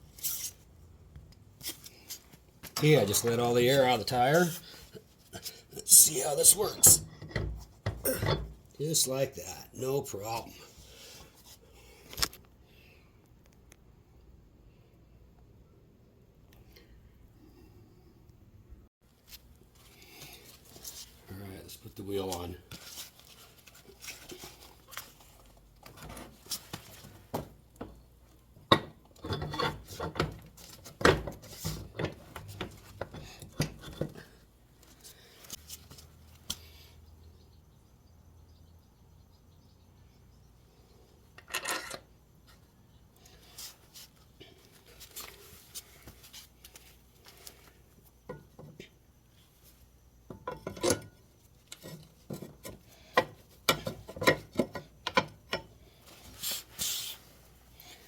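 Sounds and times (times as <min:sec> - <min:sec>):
metal hardware clinking and scraping: 0:28.7 - 0:30.4, 0:41.4 - 0:42.1, 0:50.3 - 0:55.8.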